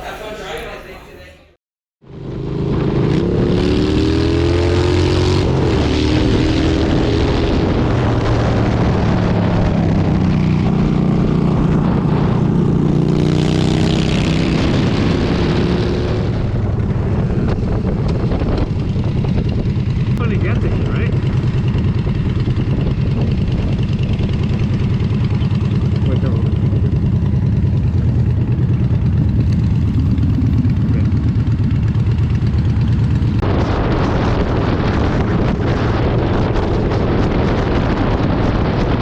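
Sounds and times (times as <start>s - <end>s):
motorcycle engine running: 2.1s - 39.0s
steady rushing noise: 26.6s - 39.0s.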